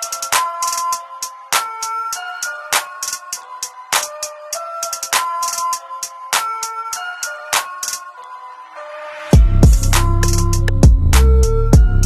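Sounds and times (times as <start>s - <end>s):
music with heavy bass and drums: 0.0s - 1.9s, 9.4s - 12.0s.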